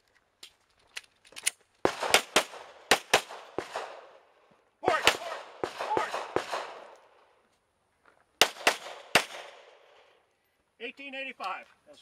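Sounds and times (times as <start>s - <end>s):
gunshots with echo: 1.9s - 4.2s, 4.8s - 6.9s, 8.4s - 10.0s.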